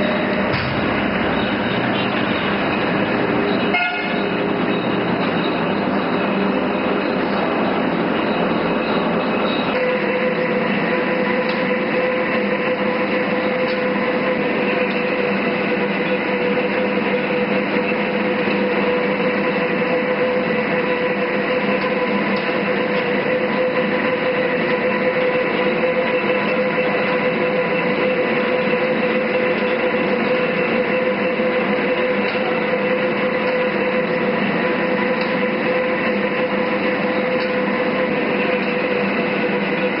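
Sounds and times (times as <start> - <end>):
gear whine: 0.0 - 40.0
lathe mechanical drone: 0.0 - 40.0.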